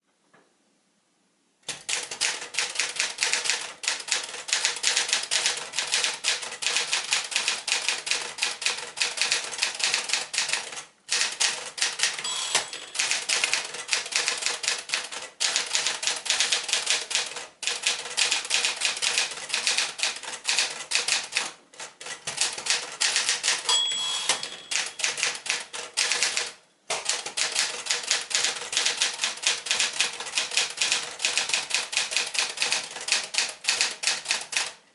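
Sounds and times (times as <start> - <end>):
typewriter keys clacking: 1.7 - 34.8
typewriter bell ring: 12.0 - 14.3, 23.4 - 26.4.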